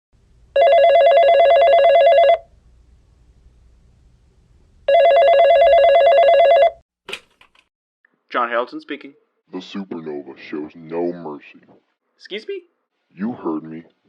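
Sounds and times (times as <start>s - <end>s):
telephone ringing: 0.6s - 2.5s, 4.9s - 6.8s.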